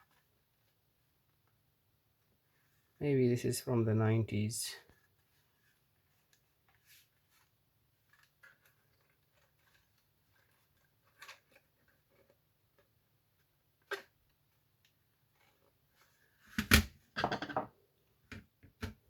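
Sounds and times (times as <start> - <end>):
plastic parts clicking and rustling: 8.0 - 12.9.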